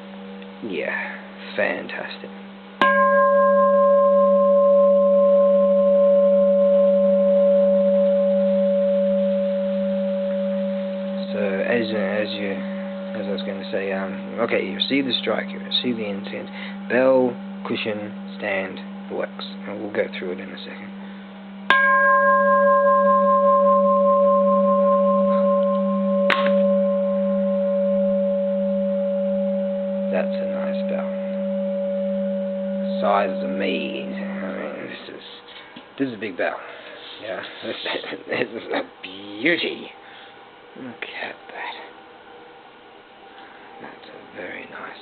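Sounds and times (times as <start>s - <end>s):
temple bell ringing: 2.8s - 17.3s, 21.7s - 35.3s.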